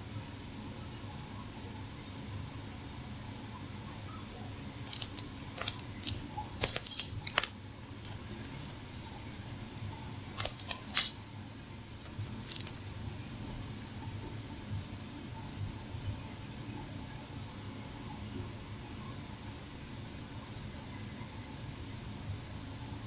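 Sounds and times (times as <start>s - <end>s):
small bell jingling: 4.9s - 9.4s, 10.4s - 11.2s, 12.0s - 13.2s, 14.7s - 15.2s.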